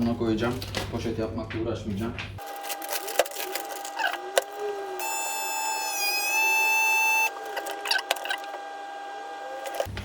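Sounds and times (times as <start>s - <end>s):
vacuum sealer motor whine: 2.8s - 10.0s.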